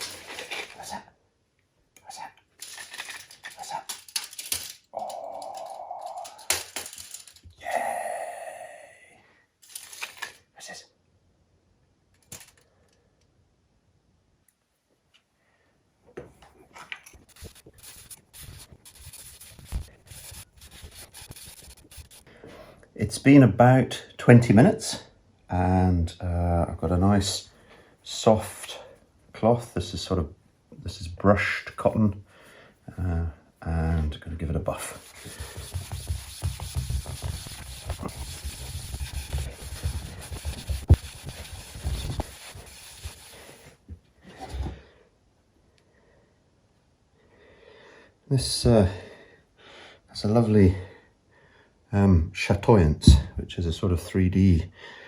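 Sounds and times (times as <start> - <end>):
cloth rubbing wax on wood: 17.3 - 22.3, 34.6 - 43.6.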